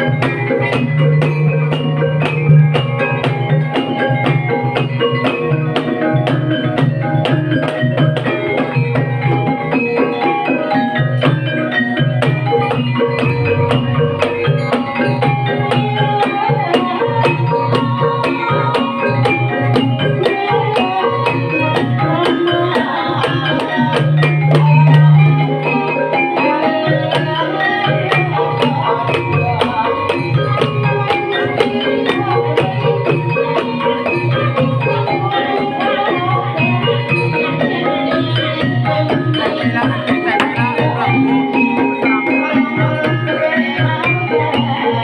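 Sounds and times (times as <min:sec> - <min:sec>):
metallophones playing melody: 0:00.0 - 0:45.0
hand drum strokes: 0:19.5 - 0:35.4.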